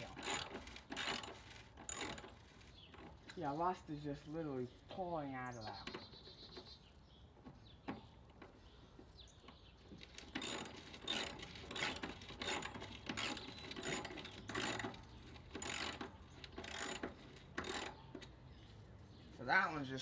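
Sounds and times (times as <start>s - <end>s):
ratchet handle clicking: 0.0s - 3.4s, 9.9s - 18.5s.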